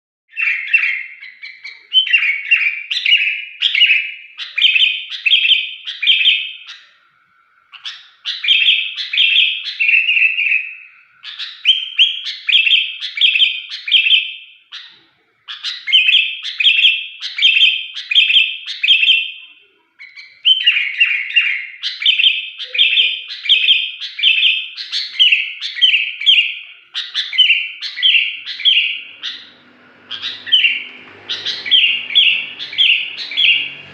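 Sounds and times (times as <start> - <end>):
bulbul chirping: 27.0 - 33.9.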